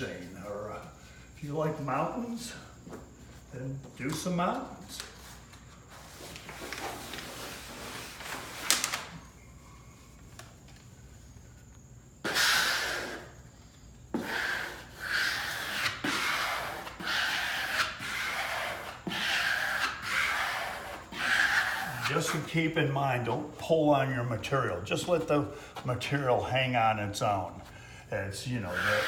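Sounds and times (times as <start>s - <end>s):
vinyl wallpaper rustling: 0.0s - 11.7s, 19.9s - 29.0s.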